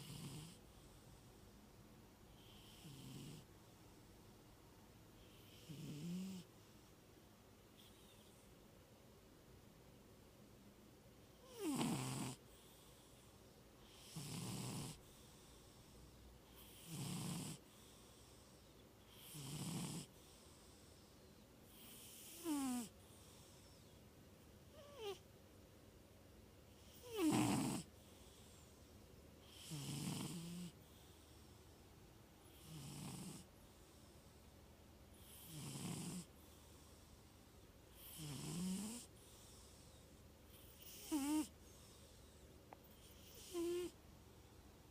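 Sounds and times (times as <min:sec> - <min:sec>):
cat snoring: 0:00.0 - 0:01.3, 0:02.3 - 0:03.5, 0:05.2 - 0:06.5, 0:11.3 - 0:21.1, 0:21.7 - 0:23.9, 0:24.7 - 0:25.2, 0:26.7 - 0:28.7, 0:29.4 - 0:31.6, 0:32.4 - 0:34.1, 0:35.1 - 0:37.1, 0:37.9 - 0:44.0.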